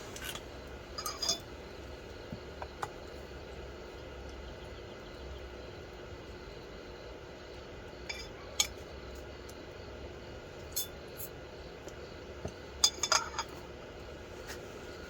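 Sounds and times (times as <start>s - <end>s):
low background hum: 0.0s - 15.0s
tableware clinks: 1.0s - 1.4s, 12.8s - 13.6s.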